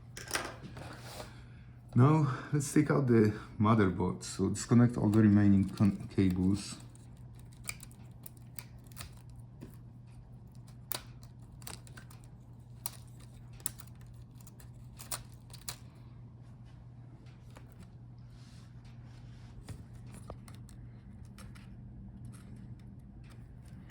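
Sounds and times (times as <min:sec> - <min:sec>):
steady low hum: 0:00.0 - 0:23.9
cable connectors clicking and scraping: 0:04.6 - 0:16.0, 0:19.6 - 0:23.9.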